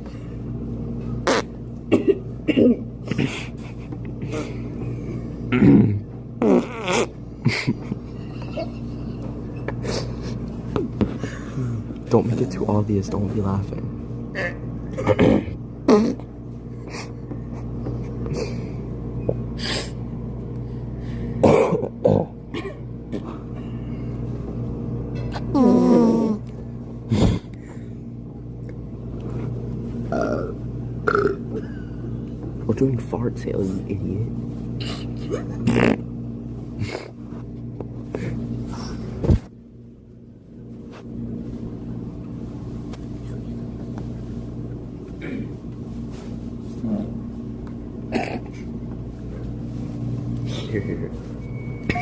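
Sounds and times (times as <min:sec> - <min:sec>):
laundromat machines humming: 0:00.0 - 0:52.0
fake fart noise: 0:01.2 - 0:01.6, 0:05.5 - 0:07.2, 0:15.0 - 0:16.3, 0:35.6 - 0:36.0
person coughing: 0:01.9 - 0:03.6, 0:05.5 - 0:07.8, 0:14.4 - 0:16.2, 0:21.4 - 0:23.4, 0:34.8 - 0:36.0, 0:45.2 - 0:45.6, 0:48.1 - 0:48.7.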